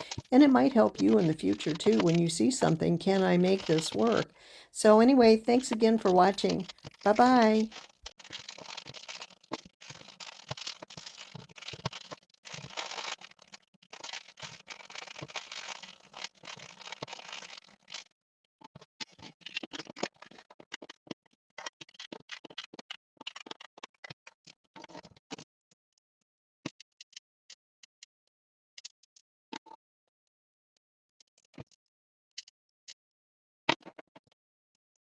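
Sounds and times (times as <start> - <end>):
small clicks and taps: 0.0 - 2.2, 5.7 - 18.1
rings scratching and rustling: 0.0 - 4.4, 5.2 - 18.0.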